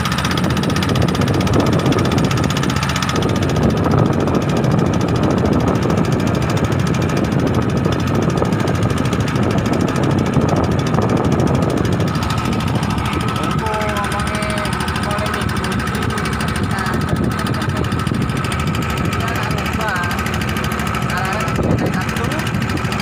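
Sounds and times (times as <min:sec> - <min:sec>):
boat motor running loudly: 0:00.0 - 0:23.0.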